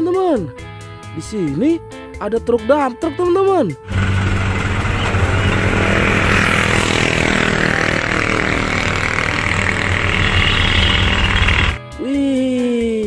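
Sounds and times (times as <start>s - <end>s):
water sprayer motor hum: 3.9s - 11.8s.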